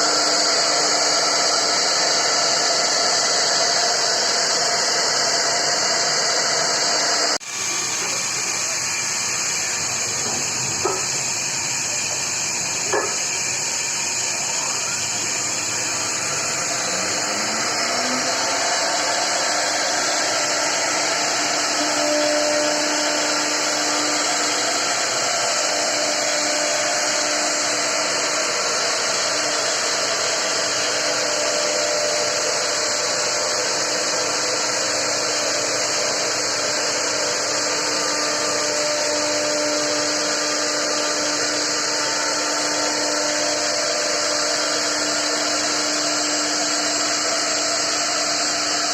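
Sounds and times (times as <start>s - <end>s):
wood router spindle whining: 0.0s - 48.9s
rising tone: 15.4s - 22.0s.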